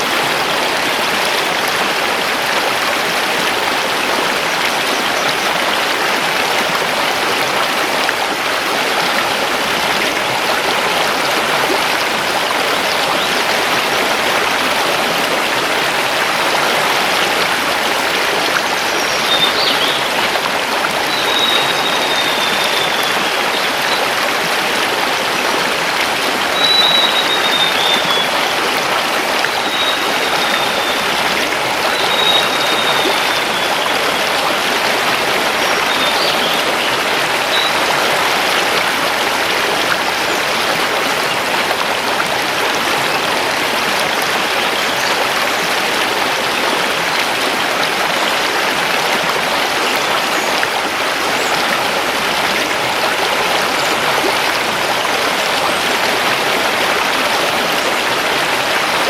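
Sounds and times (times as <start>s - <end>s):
river rushing over stones: 0.0s - 59.0s
faint high bird whistles: 21.1s - 23.1s, 26.6s - 28.3s.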